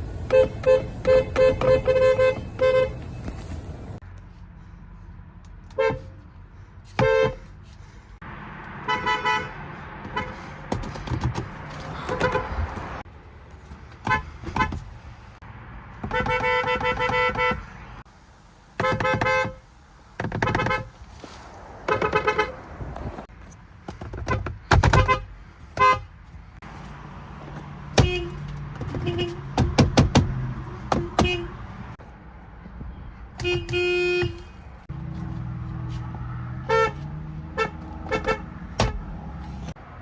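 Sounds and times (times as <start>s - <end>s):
car horns honking: 0.2s - 3.2s, 5.7s - 6.2s, 6.9s - 7.6s, 8.7s - 11.3s, 11.9s - 13.0s, 14.0s - 14.8s, 16.0s - 17.9s, 18.8s - 19.6s, 20.3s - 21.0s, 21.9s - 22.8s, 24.2s - 26.2s, 27.9s - 32.0s, 33.3s - 34.9s, 36.5s - 39.4s.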